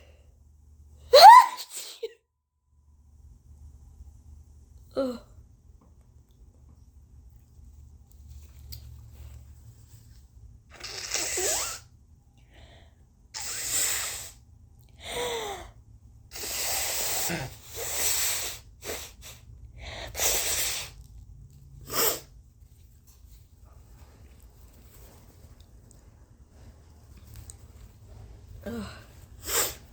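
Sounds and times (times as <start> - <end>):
woman sneezing: 1.1 - 2.1.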